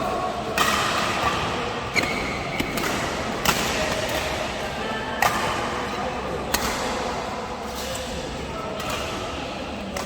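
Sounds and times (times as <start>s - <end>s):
racket hitting shuttlecock: 0.5s - 4.6s, 5.2s - 8.2s.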